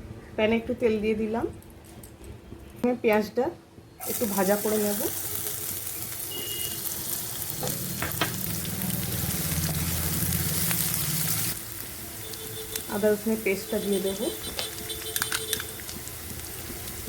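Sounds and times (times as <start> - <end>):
onion sizzling in hot oil: 4.0 - 17.0.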